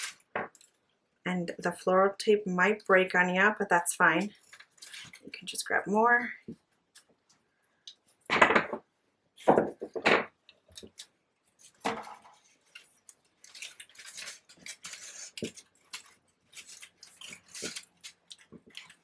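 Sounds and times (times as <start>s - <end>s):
paper and tape rustling: 0.0s - 0.7s, 4.3s - 5.6s, 10.6s - 19.0s.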